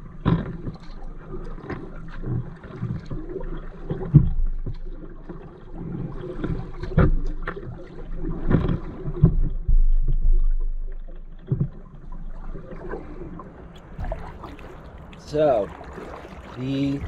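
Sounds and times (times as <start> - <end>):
water splashing and sloshing: 0.0 - 17.0
low rumble: 12.3 - 17.0.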